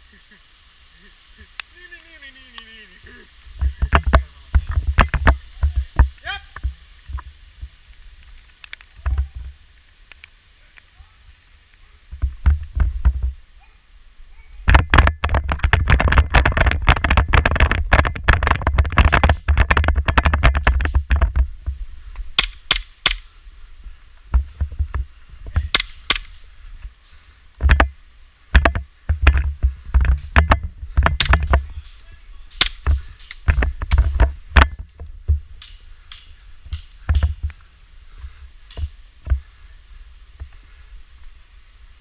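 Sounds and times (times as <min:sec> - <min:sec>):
airsoft pistol shots: 0:22.4 - 0:23.2.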